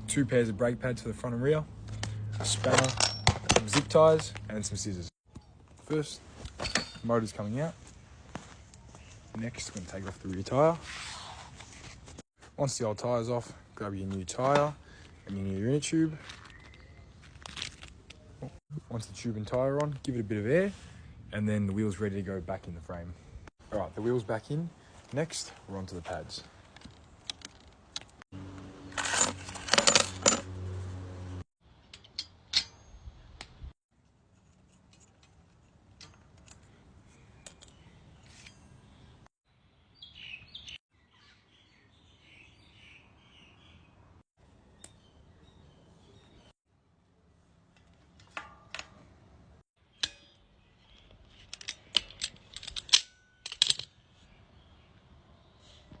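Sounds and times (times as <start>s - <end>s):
metal parts and tools clinking: 1.9s - 4.8s, 6.4s - 7.6s, 26.7s - 28.2s, 28.8s - 30.6s, 31.8s - 32.9s, 34.3s - 39.1s, 47.6s - 49.2s, 49.9s - 54.0s.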